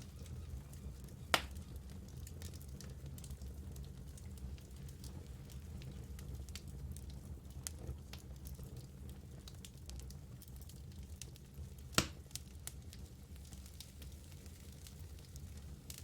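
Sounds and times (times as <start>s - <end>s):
wood fire crackling: 0.0s - 16.0s
fire pop: 1.2s - 3.0s, 11.9s - 12.4s.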